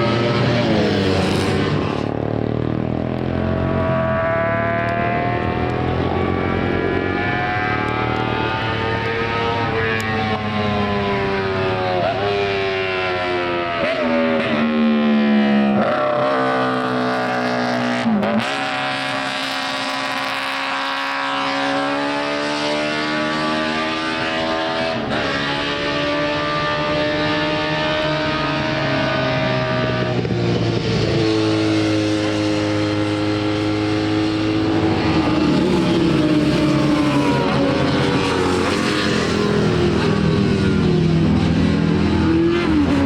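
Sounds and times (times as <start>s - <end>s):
racing motorcycle engine high revs: 0.0s - 43.0s.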